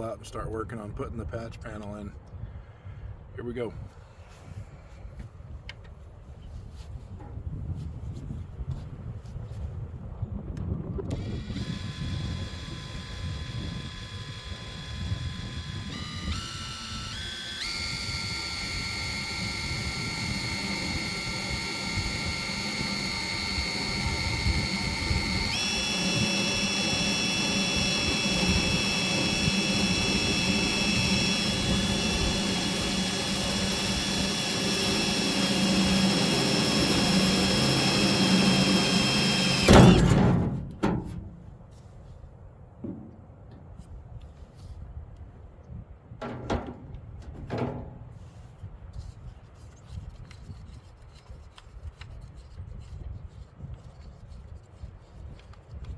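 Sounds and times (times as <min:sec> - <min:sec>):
power tool cutting sheet steel: 0:11.1 - 0:40.5
loud clunk: 0:39.6 - 0:41.4, 0:46.2 - 0:48.2.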